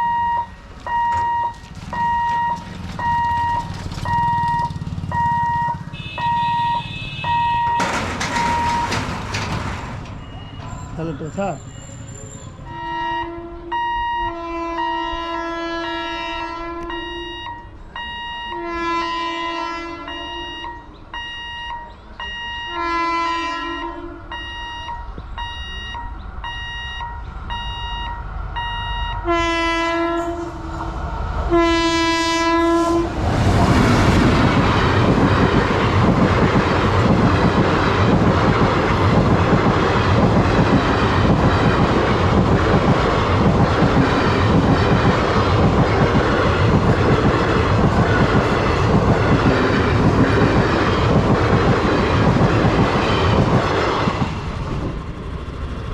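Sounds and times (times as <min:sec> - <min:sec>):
train wheels rushing on rails: 0:00.0 - 0:13.0, 0:27.2 - 0:55.9
train horn blasts: 0:05.1 - 0:08.7, 0:12.7 - 0:17.7, 0:18.3 - 0:21.0, 0:22.4 - 0:25.0, 0:28.8 - 0:30.8, 0:31.5 - 0:33.2.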